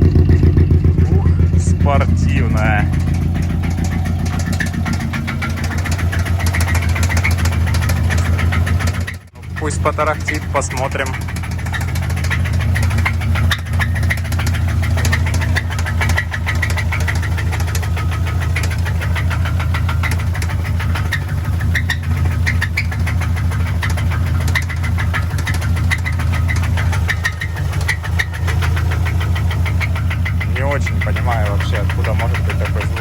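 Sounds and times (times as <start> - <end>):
car engine idling with knocking rattle: 0.0 - 33.0.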